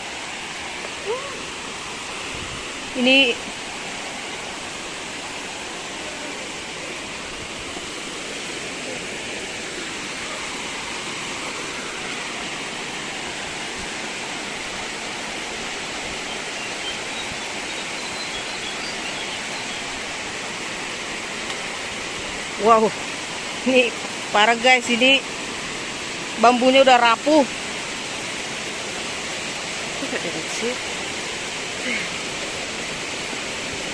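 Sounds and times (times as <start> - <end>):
waterfall rushing: 0.0 - 33.9
faint high chirps: 16.2 - 19.9.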